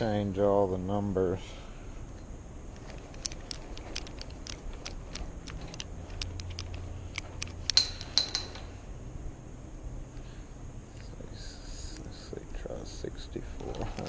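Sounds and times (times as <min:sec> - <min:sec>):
combination lock wheels clicking: 0:02.8 - 0:08.8, 0:13.6 - 0:14.0
metal clinks: 0:02.8 - 0:08.8.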